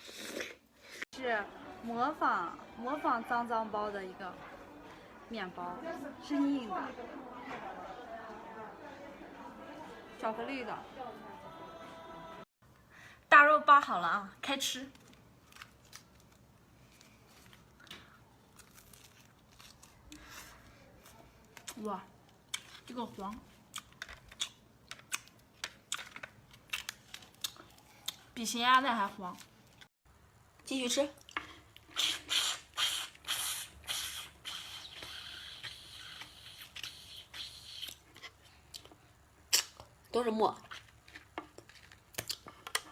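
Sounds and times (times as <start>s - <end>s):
person chewing food: 16.9s - 21.6s, 23.7s - 28.3s, 31.2s - 39.9s, 40.6s - 42.9s
mouth sounds of eating: 31.2s - 39.9s.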